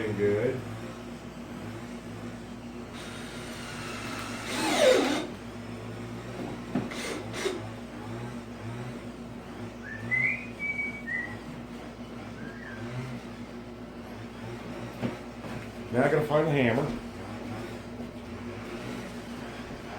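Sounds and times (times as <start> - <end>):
steady low hum: 0.0 - 19.9
power drill motor spinning down: 2.9 - 5.4, 6.9 - 7.8.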